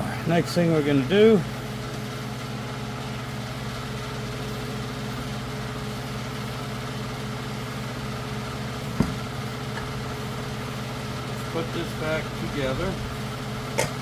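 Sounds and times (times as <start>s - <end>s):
motor humming: 0.0s - 14.0s
sharp knock: 9.0s - 9.2s.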